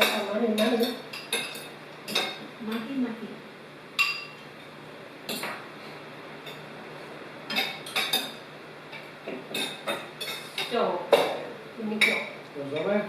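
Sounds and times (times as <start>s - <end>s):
cutlery clinking on plates: 0.0s - 2.9s, 5.3s - 5.6s, 7.5s - 11.4s.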